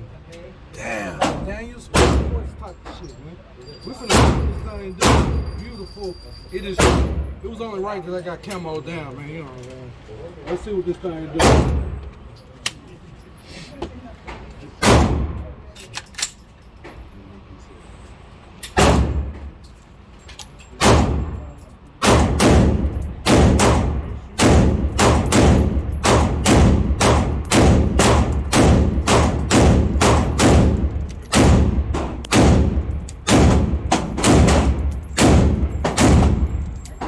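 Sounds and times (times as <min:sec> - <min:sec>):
rifle gunshots with ringing tail: 0:22.4 - 0:36.7.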